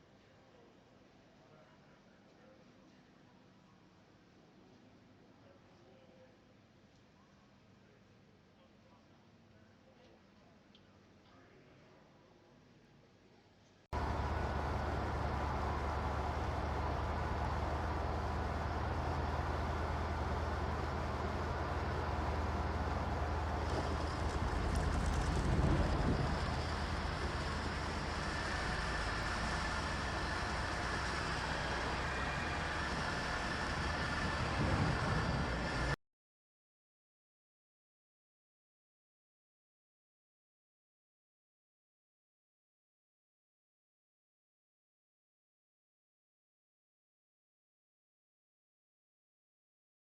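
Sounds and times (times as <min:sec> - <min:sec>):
low rumbling noise: 0:14.0 - 0:36.0.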